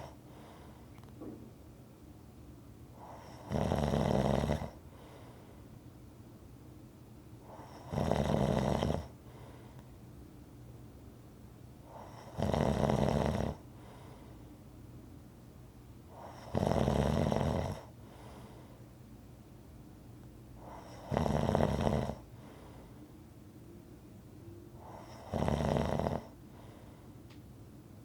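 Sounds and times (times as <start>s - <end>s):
quiet breathing: 0.0s - 1.2s, 2.9s - 3.5s, 4.2s - 6.0s, 7.4s - 8.1s, 8.7s - 10.2s, 11.8s - 14.8s, 16.0s - 16.6s, 17.2s - 19.0s, 20.5s - 23.4s, 24.6s - 27.4s
person snoring: 3.0s - 4.8s, 20.7s - 22.2s, 24.8s - 26.3s.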